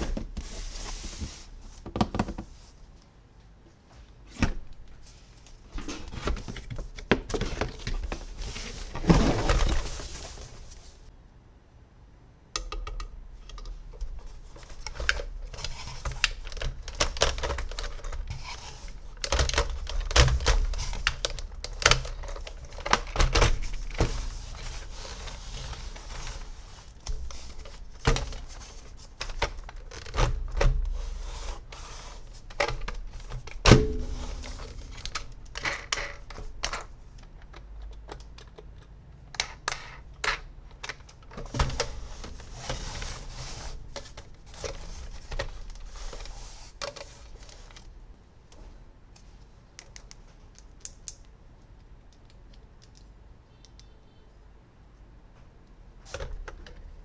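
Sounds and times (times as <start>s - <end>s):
plastic toys clicking and tapping: 49.7s - 54.0s.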